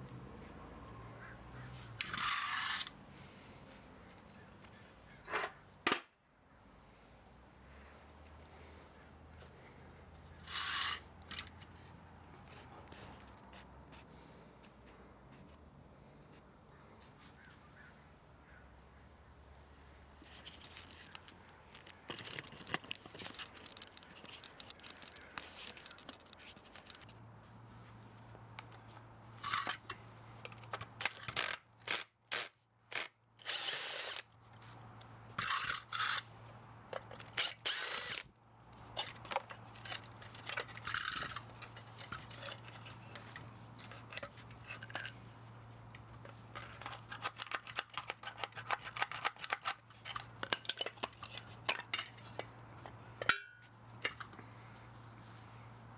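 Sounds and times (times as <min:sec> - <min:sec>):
metal parts clinking and rattling: 0:20.5 - 0:27.2, 0:29.4 - 0:34.2, 0:38.9 - 0:45.2, 0:46.0 - 0:54.4
handheld power tool running: 0:31.4 - 0:34.2, 0:37.4 - 0:38.2.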